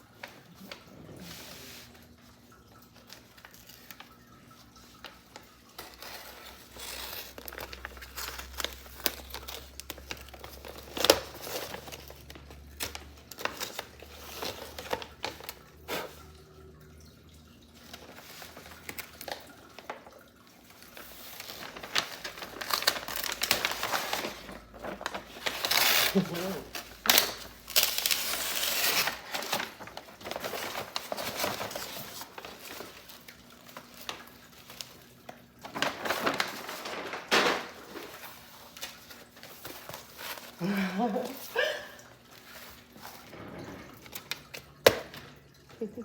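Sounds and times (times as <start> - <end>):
wrapping crinkling and rustling: 0.0 - 46.0.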